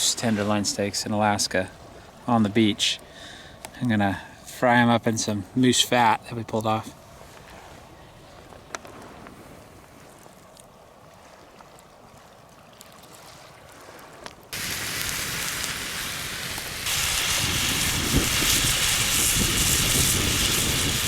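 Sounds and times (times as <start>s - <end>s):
meat sizzling in a frying pan: 14.6s - 21.0s.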